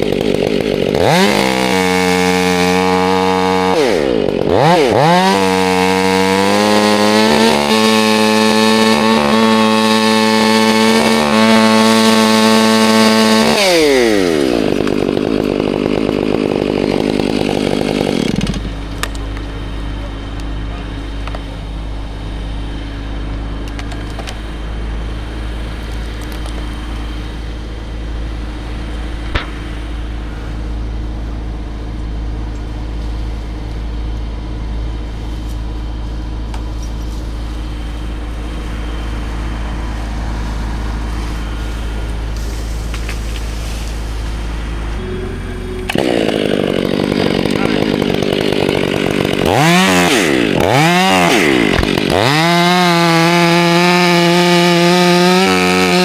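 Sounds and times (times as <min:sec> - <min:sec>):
chainsaw at full throttle: 0:00.0 - 0:56.0
low steady engine drone: 0:18.4 - 0:50.6.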